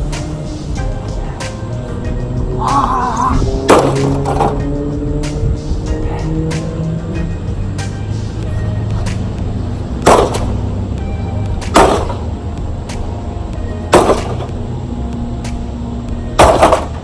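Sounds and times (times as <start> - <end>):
background music: 0.0 - 17.0
heavy blows crashing on microwave: 3.4 - 14.7.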